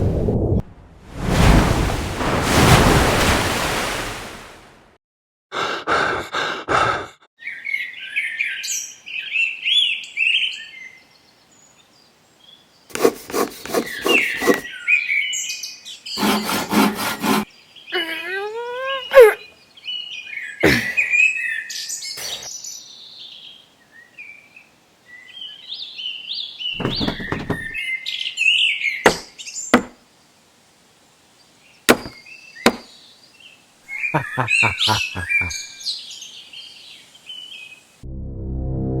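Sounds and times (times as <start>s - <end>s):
sharp knocks and thumps: 26.8s - 27.8s, 29.8s - 30.0s, 31.9s - 32.8s.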